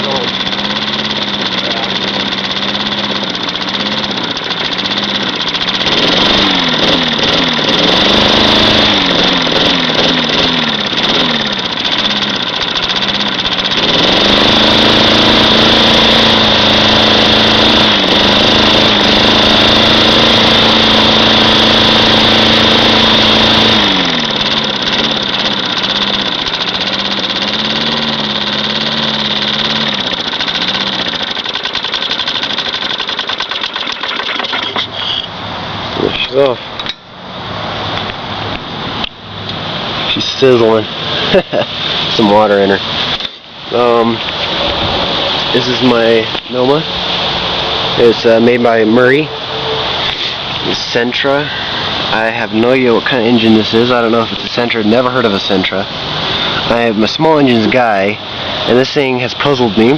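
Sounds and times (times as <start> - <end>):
lawn mower engine running unevenly: 0.0 - 36.9, 39.4 - 59.9.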